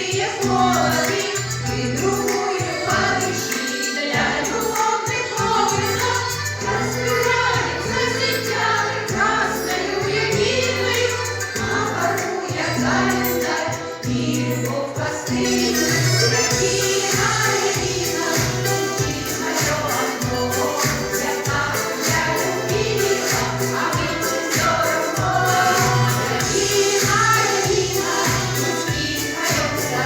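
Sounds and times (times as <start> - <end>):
instrumental accompaniment with bass: 0.0 - 30.0
vocal ensemble singing: 0.0 - 30.0.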